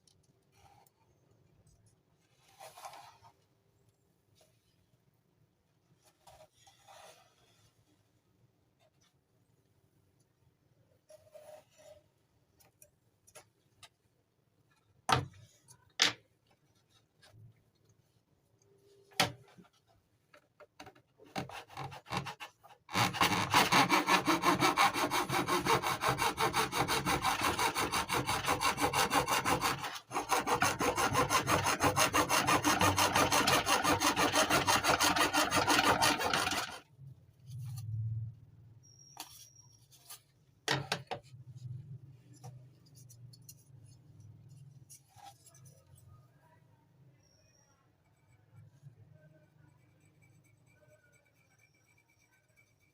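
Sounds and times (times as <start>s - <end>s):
hand saw strokes: 21.4s - 36.8s.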